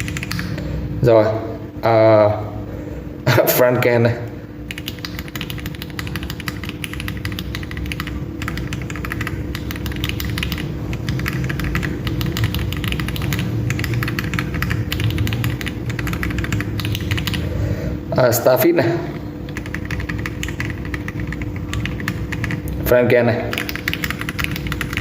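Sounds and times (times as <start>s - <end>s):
mechanical keyboard typing clicks: 0.0s - 0.6s, 4.7s - 17.4s, 19.5s - 22.7s, 23.5s - 25.0s.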